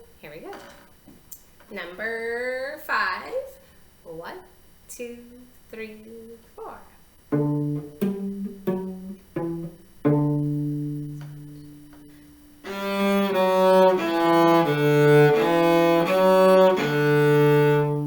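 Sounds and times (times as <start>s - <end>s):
bowed cello notes: 7.3s - 18.0s
cello plucked notes: 7.3s - 18.0s.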